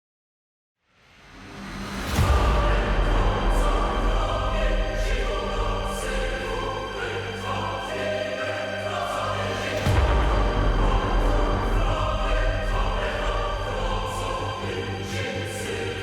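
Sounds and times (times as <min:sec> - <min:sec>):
epic orchestral music: 0:01.2 - 0:16.0
choir singing: 0:01.5 - 0:16.0.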